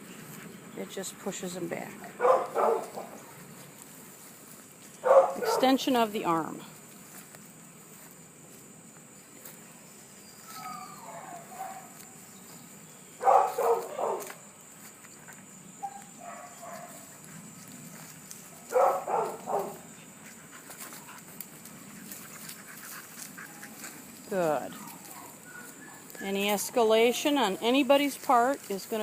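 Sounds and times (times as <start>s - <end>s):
dogs barking: 2.1s - 3.4s, 5.0s - 5.8s, 10.6s - 12.0s, 13.2s - 14.4s, 15.8s - 17.2s, 18.6s - 20.0s, 24.8s - 26.2s.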